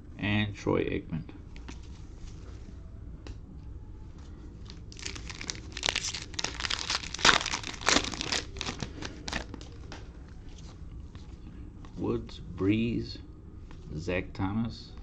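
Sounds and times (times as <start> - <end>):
cellophane wrapper tearing and crinkling: 4.6 - 9.8.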